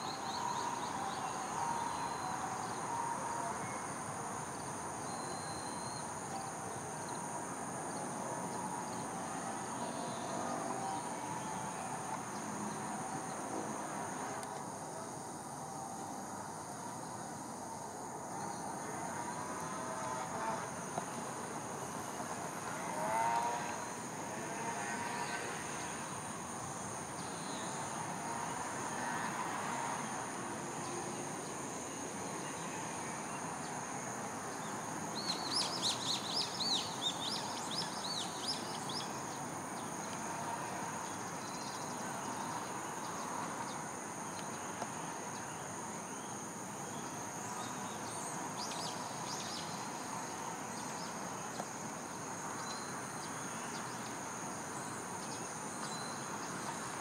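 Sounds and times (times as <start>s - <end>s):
insects chirring: 0.0s - 57.0s.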